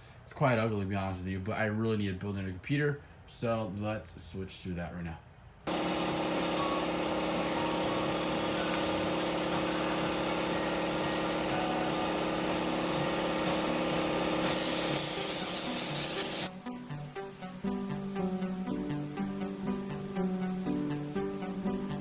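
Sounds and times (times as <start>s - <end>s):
small motor humming: 5.7s - 16.5s
music: 5.7s - 22.0s
hiss of spray: 14.1s - 16.5s.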